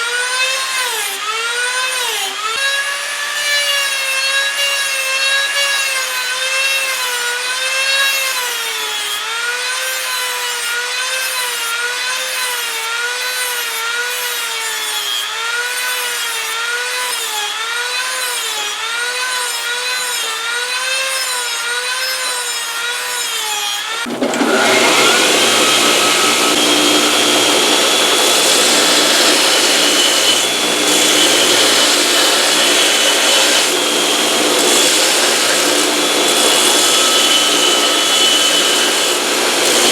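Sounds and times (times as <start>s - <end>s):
rotary tool grinding steel: 0.0s - 39.9s
belt grinder rushing: 23.7s - 39.9s.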